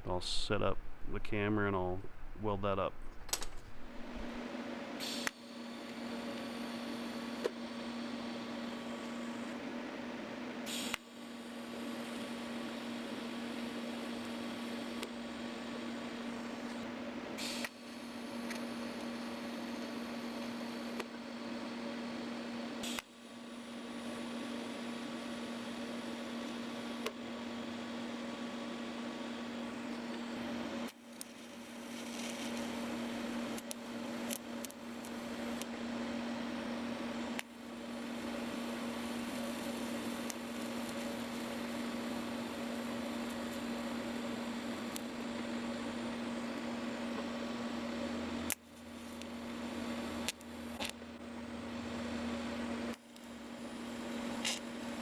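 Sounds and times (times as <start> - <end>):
electrical hum: 0.0 - 4.5, 17.9 - 55.0
arc welder crackling sizzle: 10.7 - 55.0.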